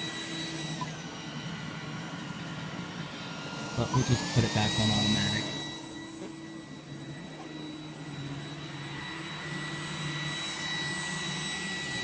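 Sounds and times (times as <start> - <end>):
robot vacuum fan whine: 0.0 - 12.0.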